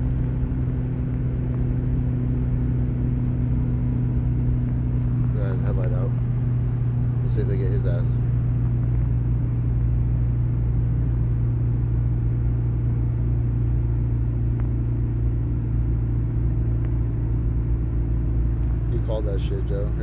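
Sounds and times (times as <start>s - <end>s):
car engine drone: 0.0s - 20.0s
road noise inside car: 0.0s - 20.0s.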